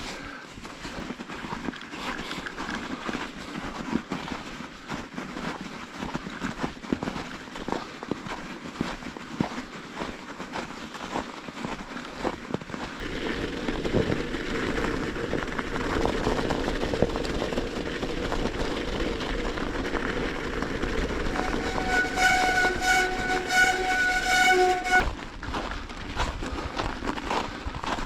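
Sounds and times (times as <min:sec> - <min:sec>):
train rumbling past: 0:21.0 - 0:25.1
train horn short blasts: 0:21.3 - 0:25.1.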